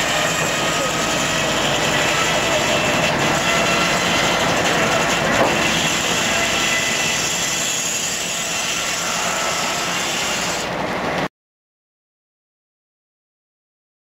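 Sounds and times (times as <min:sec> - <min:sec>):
steam machinery running: 0:00.0 - 0:11.3.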